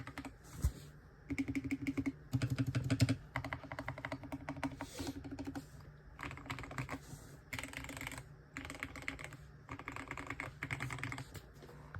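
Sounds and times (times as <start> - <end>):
mechanical keyboard typing: 0.0 - 0.3, 1.3 - 5.6, 6.2 - 11.4.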